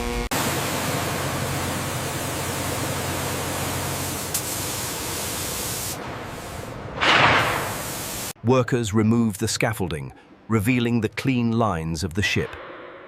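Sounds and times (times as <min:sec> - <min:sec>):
steady hissing rushing noise: 0:00.4 - 0:08.4.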